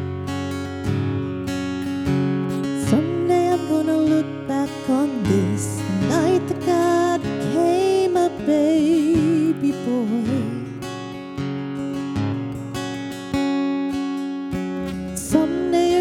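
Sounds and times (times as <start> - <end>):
acoustic guitar strumming: 0.0 - 16.0
person singing with vibrato: 2.7 - 11.0, 15.0 - 16.0.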